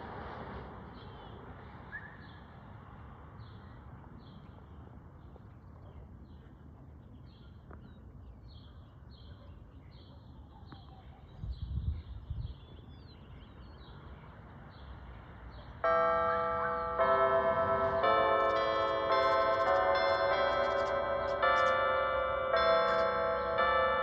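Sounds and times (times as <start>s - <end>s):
church bells playing a tune: 15.8s - 24.0s.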